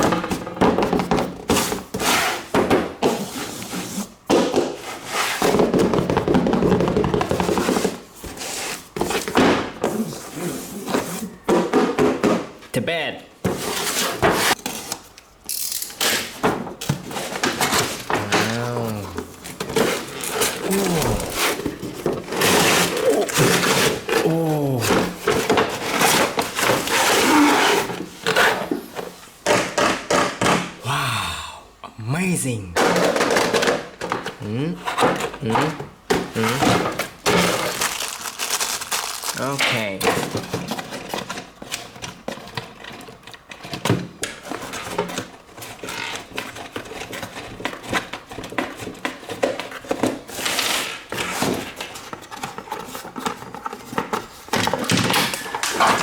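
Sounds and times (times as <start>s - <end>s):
plastic toys knocking and clicking: 5.5s - 8.0s, 11.5s - 12.6s, 29.4s - 30.8s, 32.8s - 38.2s, 39.0s - 56.0s
packaging rustling: 17.1s - 28.5s, 36.4s - 41.8s.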